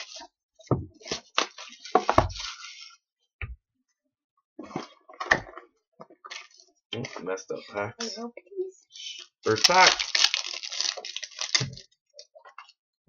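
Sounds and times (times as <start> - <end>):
packaging rustling and crinkling: 1.0 - 3.0, 9.5 - 11.9.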